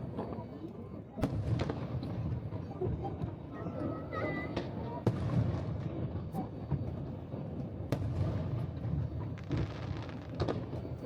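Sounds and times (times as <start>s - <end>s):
fireworks booming: 7.9s - 11.0s.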